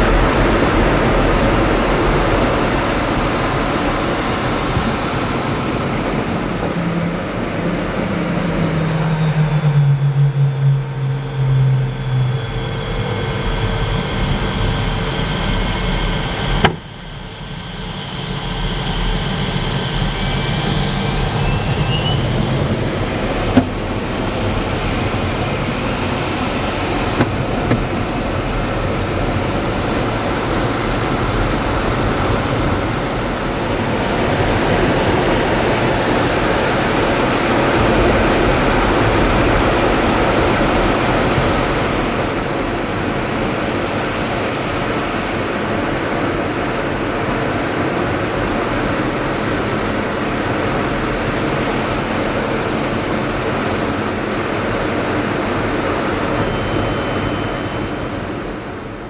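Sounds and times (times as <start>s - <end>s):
jet engine and rushing air: 0.0s - 46.7s, 47.8s - 59.0s.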